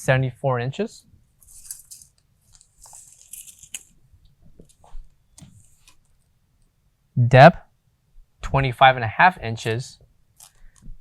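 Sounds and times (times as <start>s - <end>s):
tape measure blade scraping: 1.4s - 3.9s.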